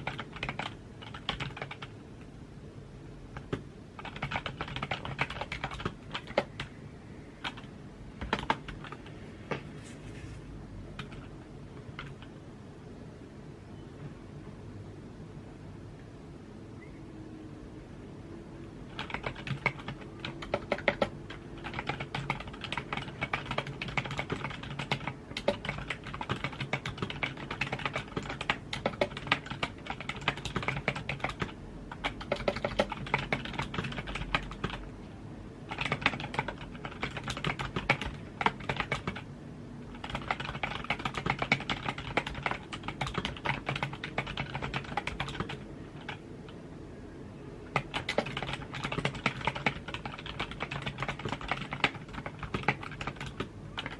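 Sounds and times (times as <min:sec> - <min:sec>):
keyboard typing clicks: 0:00.0 - 0:01.9, 0:03.4 - 0:06.8, 0:07.4 - 0:09.7, 0:11.0 - 0:12.3, 0:18.9 - 0:34.8, 0:35.7 - 0:39.2, 0:39.9 - 0:46.6, 0:47.7 - 0:53.9.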